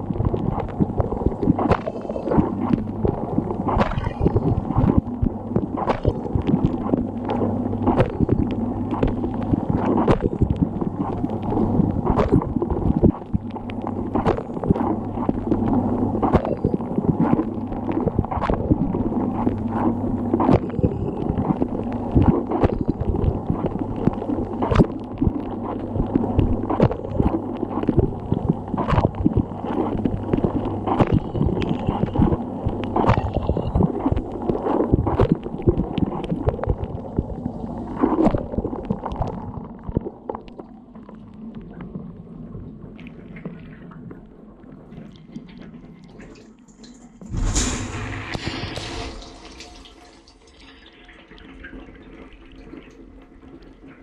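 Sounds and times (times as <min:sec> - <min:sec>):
water jets knocking: 0:46.2 - 0:53.6
water spraying in dishwasher: 0:46.8 - 0:51.8.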